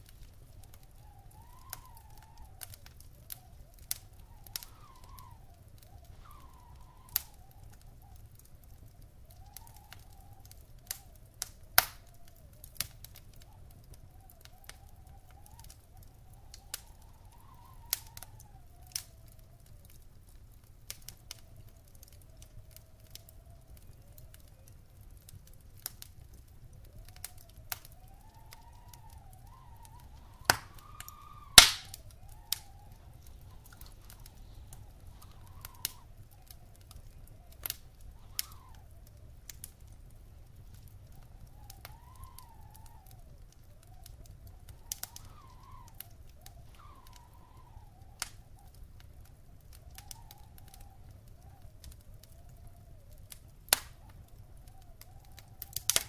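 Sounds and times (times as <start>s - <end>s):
sharp pops of fire: 0.0s - 56.0s
wood fire crackling: 0.0s - 56.0s
faint wavering whistle: 0.2s - 11.1s, 13.4s - 19.7s, 26.7s - 39.3s, 40.6s - 48.9s, 49.6s - 53.3s.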